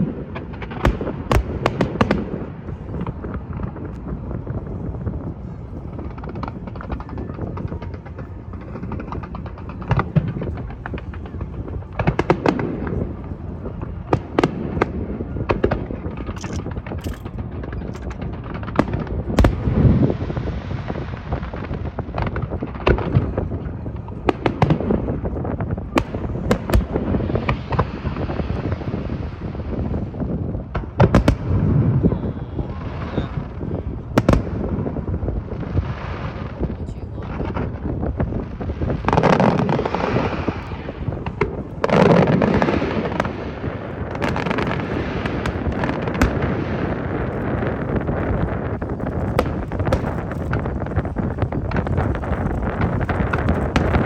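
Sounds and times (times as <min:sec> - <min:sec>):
sharp firework crack: 0:00.0 - 0:04.0, 0:37.4 - 0:54.0
fireworks booming: 0:00.0 - 0:54.0
fireworks cracking: 0:00.0 - 0:54.0.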